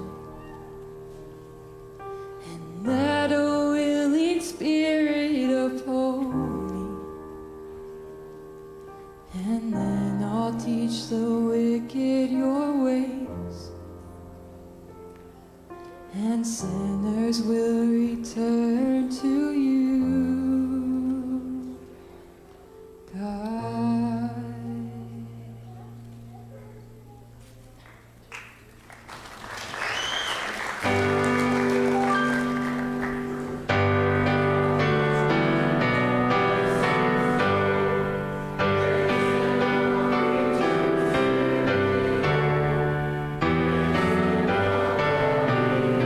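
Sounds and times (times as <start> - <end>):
slow keyboard worship music: 0.0 - 46.0
low accompanying chord: 30.7 - 46.0.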